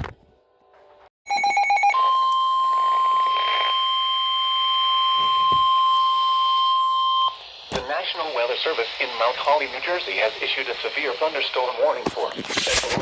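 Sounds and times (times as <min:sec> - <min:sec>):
steady high alarm beep: 0:01.3 - 0:07.4.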